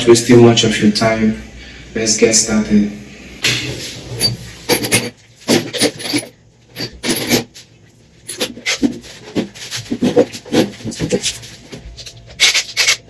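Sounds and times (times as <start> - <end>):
metal parts scraping and clinking: 3.7 - 7.6, 8.2 - 13.0.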